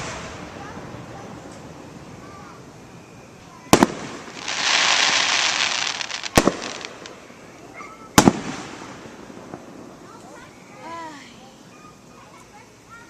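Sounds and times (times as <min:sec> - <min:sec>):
firework bangs: 0:00.0 - 0:10.2
fireworks crackling hiss: 0:00.0 - 0:13.0.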